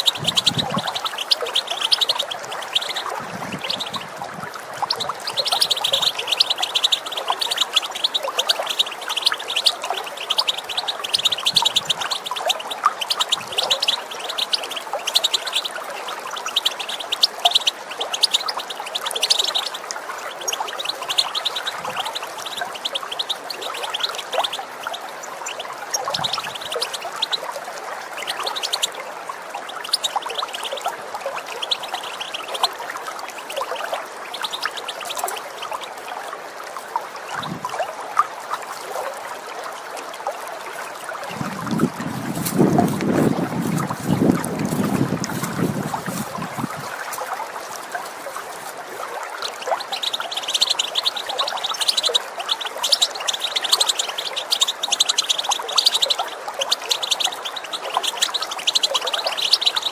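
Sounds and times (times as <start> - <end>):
finch twittering chirps: 0.0 - 4.2, 4.8 - 27.5, 28.1 - 29.0, 29.6 - 35.8, 49.3 - 59.9
water trickling: 0.0 - 59.9.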